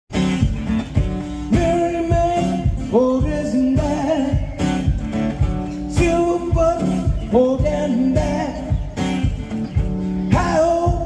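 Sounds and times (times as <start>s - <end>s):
live rock band playing: 0.1s - 11.0s
person singing: 10.3s - 11.0s.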